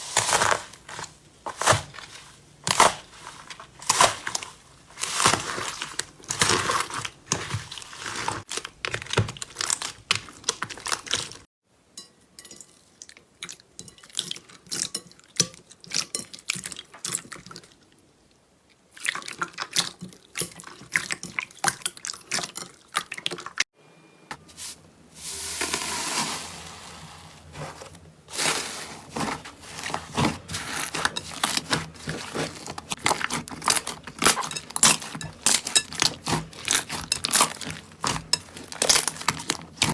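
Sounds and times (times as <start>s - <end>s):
slime crackling and squelching: 0.0s - 11.5s, 28.3s - 39.9s.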